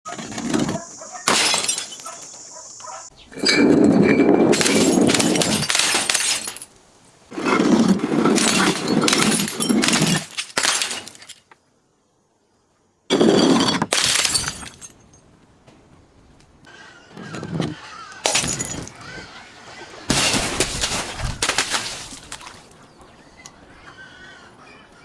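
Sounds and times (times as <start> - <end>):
glass bottles shattering: 1.2 - 2.4, 3.4 - 6.7, 8.3 - 11.4, 13.1 - 15.2, 18.2 - 19.0, 20.1 - 22.6.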